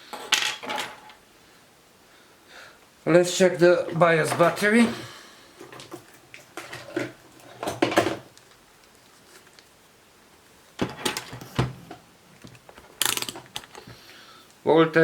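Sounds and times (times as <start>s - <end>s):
small parts and tools clattering: 0.0s - 1.2s, 5.6s - 8.6s, 10.8s - 14.0s.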